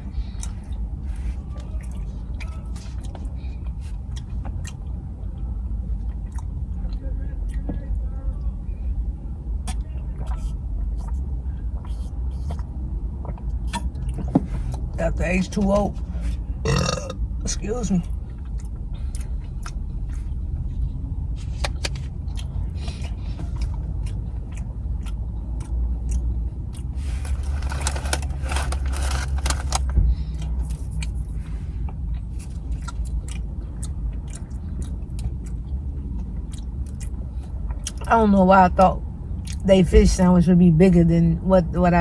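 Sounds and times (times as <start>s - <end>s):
person chewing food: 0.0s - 7.7s, 9.6s - 14.9s, 16.3s - 17.3s, 18.0s - 38.1s
steady low rumble: 0.0s - 42.0s.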